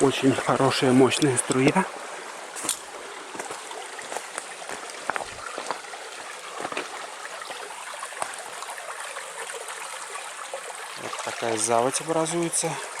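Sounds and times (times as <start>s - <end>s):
water flowing into a brook: 0.0s - 13.0s.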